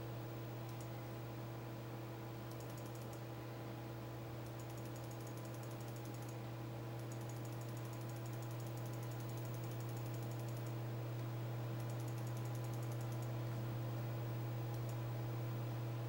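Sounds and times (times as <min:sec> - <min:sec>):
low electrical hum: 0:00.0 - 0:16.0
rapid high-pitched ticking: 0:04.6 - 0:06.4, 0:07.1 - 0:10.7, 0:11.9 - 0:13.2.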